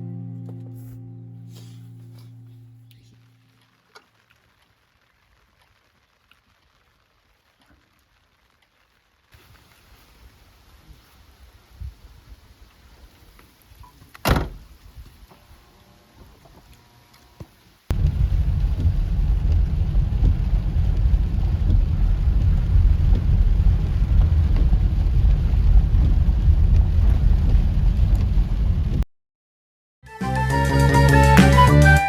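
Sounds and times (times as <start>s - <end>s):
deep rumbling noise: 17.9s - 29.0s.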